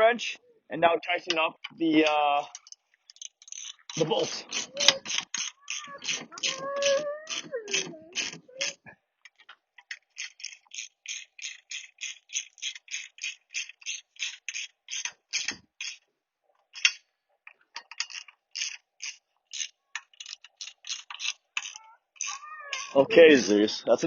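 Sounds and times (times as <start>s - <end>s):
ratchet wrench clicking: 2.5s - 8.8s, 9.9s - 16.0s, 17.8s - 23.0s.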